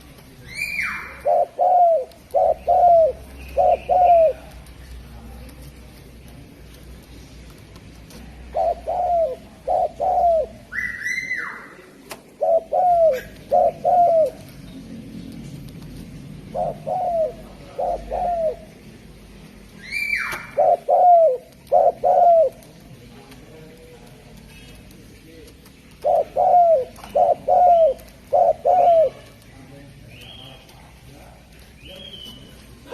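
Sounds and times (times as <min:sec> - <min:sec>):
dove cooing: 0:00.0 - 0:04.8, 0:08.1 - 0:14.7, 0:16.4 - 0:19.0, 0:19.8 - 0:23.1, 0:25.7 - 0:29.4.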